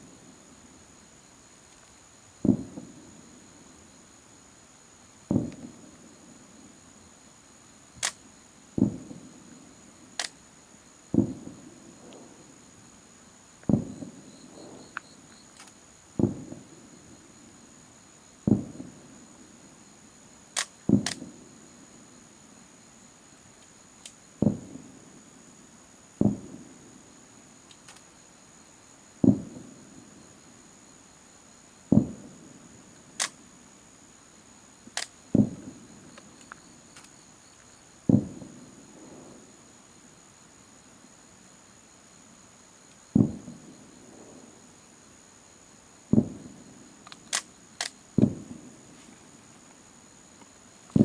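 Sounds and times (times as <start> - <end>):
insect trill: 0.0 - 51.0
sharp firework cracks: 2.4 - 3.0, 5.3 - 5.9, 13.6 - 16.7, 20.6 - 21.3, 43.2 - 43.6, 46.1 - 49.0
firework shells booming: 2.4 - 3.1, 5.3 - 6.0, 8.8 - 9.4, 11.1 - 12.4, 13.6 - 15.0, 16.2 - 16.7, 18.4 - 19.0, 20.9 - 21.4, 24.4 - 24.8, 26.2 - 26.7, 29.2 - 29.8, 31.9 - 32.4, 35.3 - 36.1, 38.1 - 39.2, 43.1 - 44.5, 46.1 - 47.4, 48.2 - 49.0.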